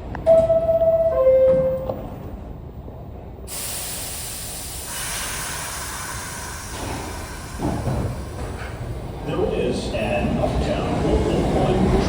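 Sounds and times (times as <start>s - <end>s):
train air system hissing: 3.5s - 9.1s.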